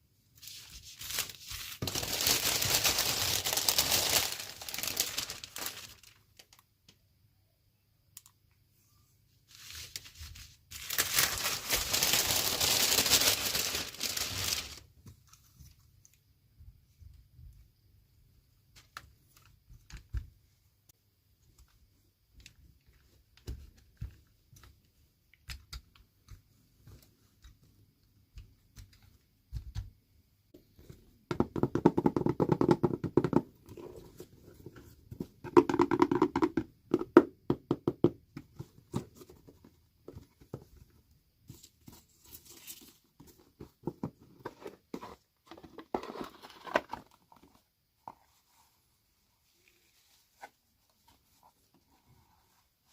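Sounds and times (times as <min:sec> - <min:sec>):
packaging crinkling and tearing: 0:00.5 - 0:06.6, 0:09.6 - 0:14.9.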